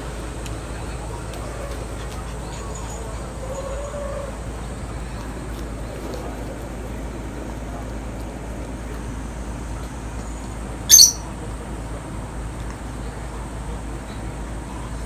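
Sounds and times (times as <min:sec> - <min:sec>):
pet squealing: 0:10.9 - 0:11.3.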